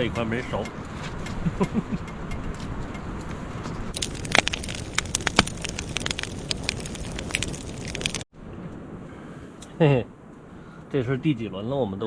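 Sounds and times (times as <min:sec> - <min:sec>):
wood fire crackling and popping: 0:03.9 - 0:08.3.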